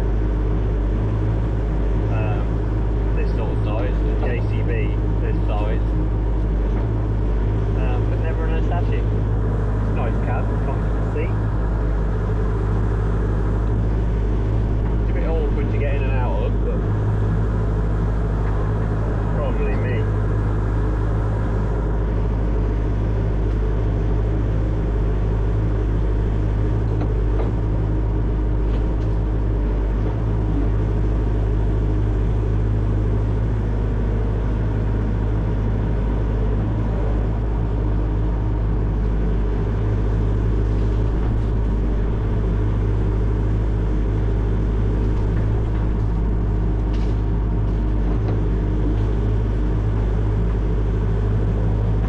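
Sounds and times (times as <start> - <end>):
diesel engine droning: 0.0 - 52.0.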